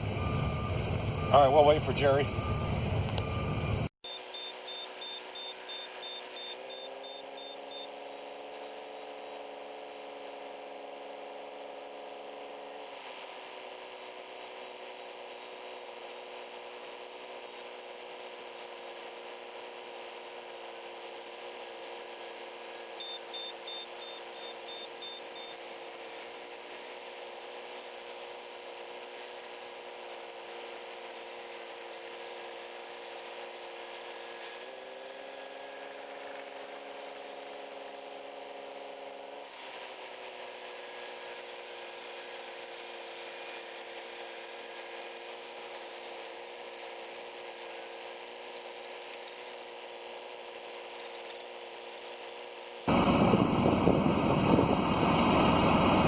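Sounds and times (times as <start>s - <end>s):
mechanical hum: 52.9s - 56.0s.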